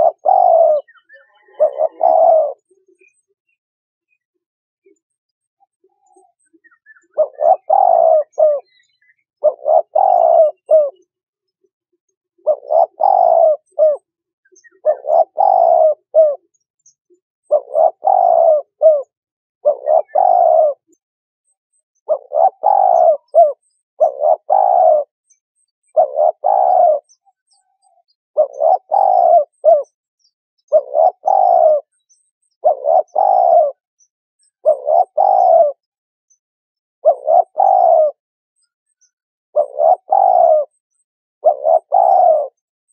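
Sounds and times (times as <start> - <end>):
dove cooing: 0.0 - 3.2, 5.9 - 11.0, 12.4 - 16.6, 17.5 - 21.0, 22.1 - 25.2, 25.8 - 30.0, 30.6 - 33.8, 34.5 - 35.9, 37.0 - 38.2, 39.6 - 42.7.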